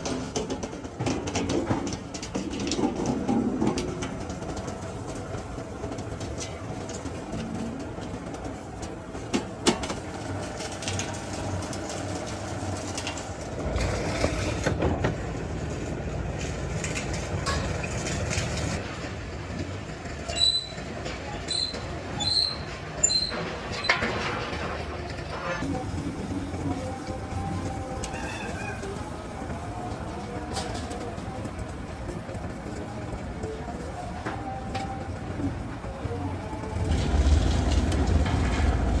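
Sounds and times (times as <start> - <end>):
mechanical rumble: 0.0 - 39.0
metal clanks: 16.8 - 18.8
short high squeals: 20.3 - 20.8, 21.4 - 24.0.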